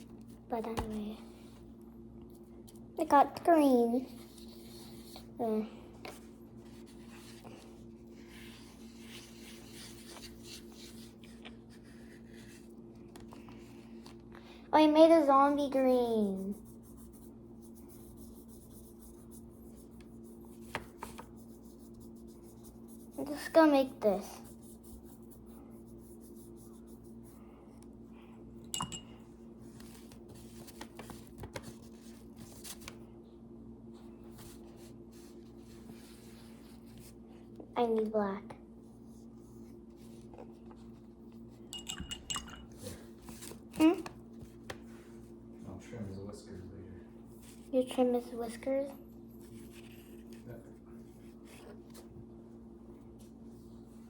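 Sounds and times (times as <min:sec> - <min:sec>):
steady low hum: 0:00.0 - 0:54.0
paintbrush brushing and scraping: 0:04.0 - 0:05.3, 0:06.1 - 0:12.8, 0:16.2 - 0:27.6, 0:34.0 - 0:37.2, 0:49.3 - 0:52.1
paintbrush clinking against cups: 0:28.6 - 0:29.4, 0:41.6 - 0:43.1.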